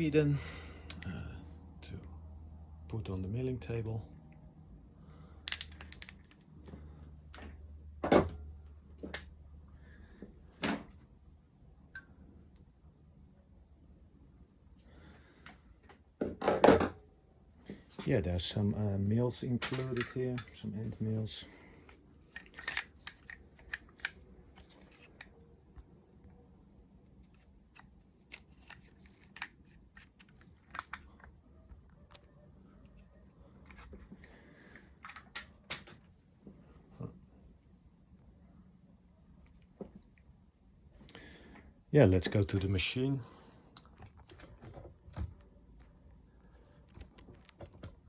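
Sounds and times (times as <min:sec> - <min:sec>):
metal parts knocking and clinking: 0:05.4 - 0:06.7, 0:19.5 - 0:20.6, 0:22.2 - 0:25.2
faint low hum: 0:16.8 - 0:48.0.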